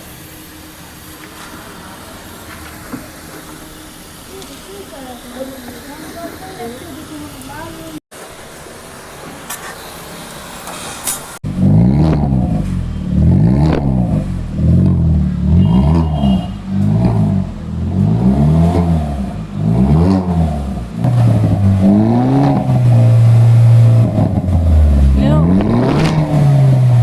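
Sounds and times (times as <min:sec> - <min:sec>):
car engine revving through exhaust: 0:11.4 - 0:27.0.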